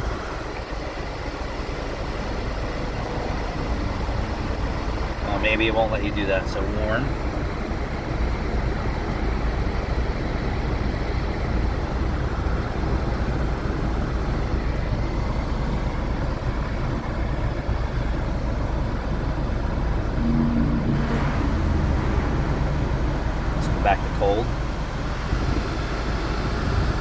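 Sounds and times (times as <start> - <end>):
idling car drone: 0.0 - 27.0
brief low hum: 20.1 - 24.7.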